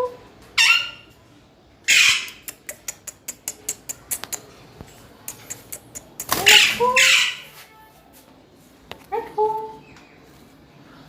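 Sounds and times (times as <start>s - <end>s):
parrot squawks: 0.6s - 1.1s, 1.9s - 2.5s, 6.4s - 7.6s
parrot clicking: 2.0s - 4.5s, 5.2s - 6.6s.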